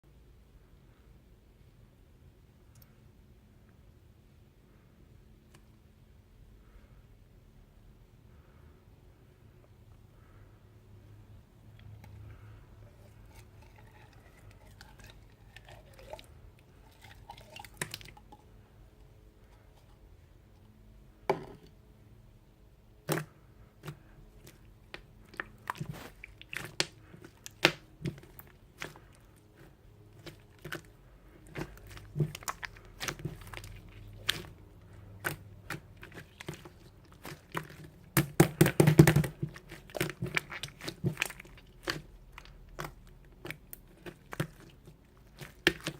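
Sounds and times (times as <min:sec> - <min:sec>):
slime clicking and crackling: 0:24.4 - 0:34.6, 0:35.2 - 0:45.9.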